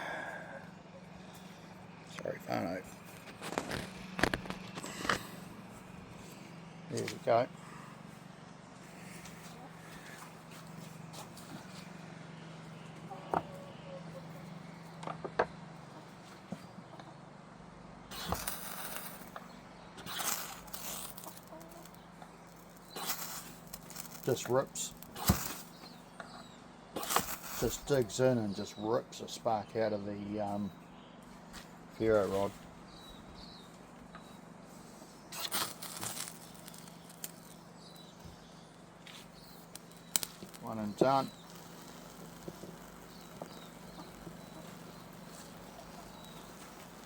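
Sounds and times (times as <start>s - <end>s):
striker scraping ferro rod: 18.1s - 19.3s, 20.0s - 22.0s, 22.8s - 25.7s, 27.0s - 28.1s, 35.3s - 37.6s
ferro rod rasping scrape: 27.0s - 27.9s.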